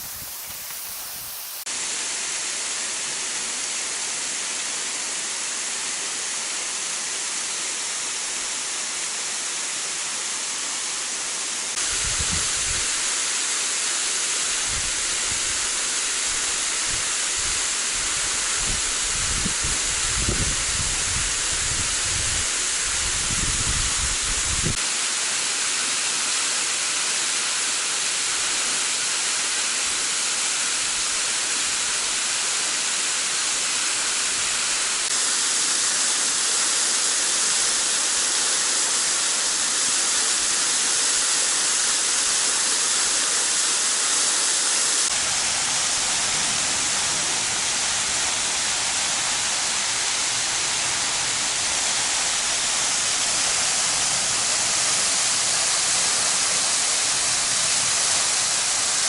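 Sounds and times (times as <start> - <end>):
waterfall rushing: 0.0 - 2.2, 31.6 - 59.0.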